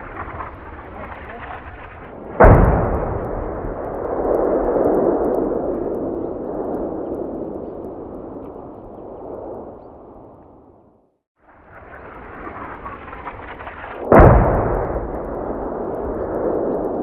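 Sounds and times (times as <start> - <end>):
echoing cannon shot rumble: 2.2 - 7.1, 14.0 - 17.0.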